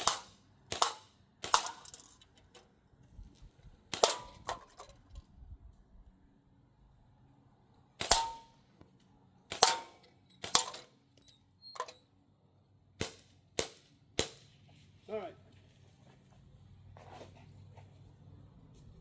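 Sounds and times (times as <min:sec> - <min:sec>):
bb rifle firing: 0:00.0 - 0:02.6, 0:03.9 - 0:05.0, 0:08.0 - 0:08.5, 0:09.5 - 0:10.9, 0:13.0 - 0:14.5
short metallic ring: 0:00.0 - 0:02.6, 0:04.0 - 0:05.0, 0:08.0 - 0:08.6, 0:09.5 - 0:12.0.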